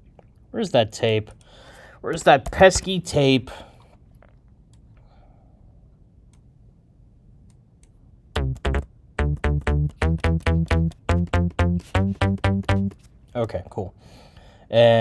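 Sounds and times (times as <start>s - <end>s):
staccato synthesizer bass: 8.4s - 13.0s.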